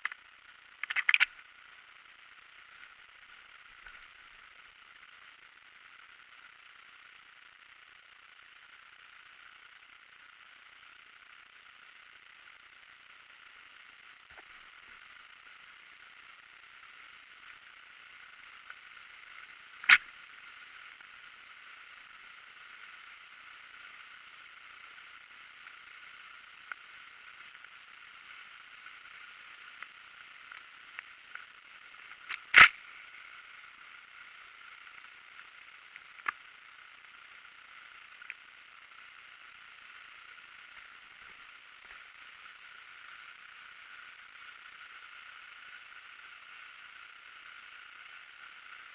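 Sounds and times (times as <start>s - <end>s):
faint ticks: 0.0s - 48.9s
loud sharp clicks: 32.5s - 32.7s.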